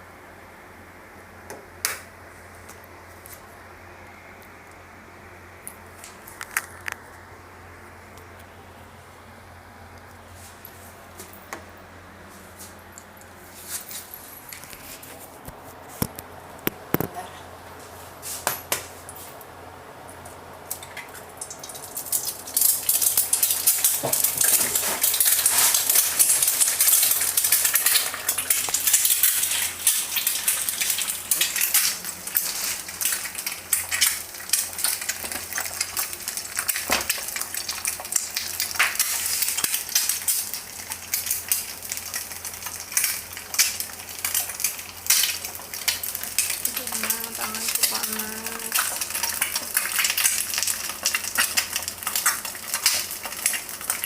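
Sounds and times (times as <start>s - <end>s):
food sizzling in frying pan: 20.8s - 54.0s.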